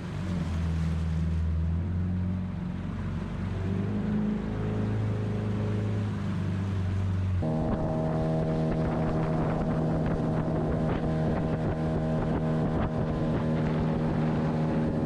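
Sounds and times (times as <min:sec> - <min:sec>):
boat outboard motor running: 0:00.0 - 0:15.0.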